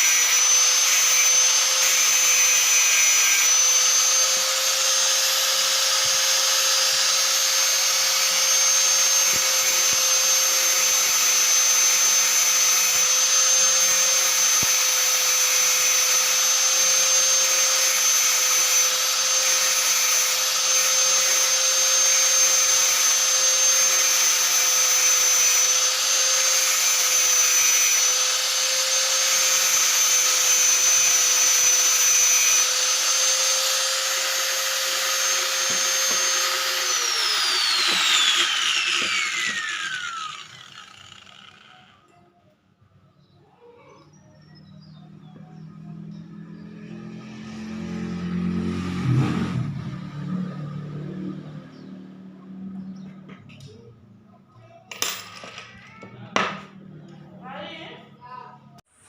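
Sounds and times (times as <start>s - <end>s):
angle grinder grinding metal: 0.0s - 42.2s, 54.9s - 57.6s.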